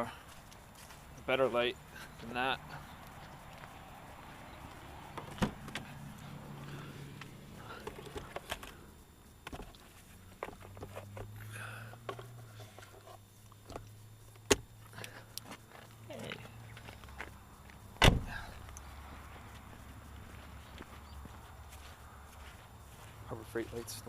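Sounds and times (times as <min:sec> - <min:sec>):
clicks and knocks of car work: 0:11.9 - 0:14.7.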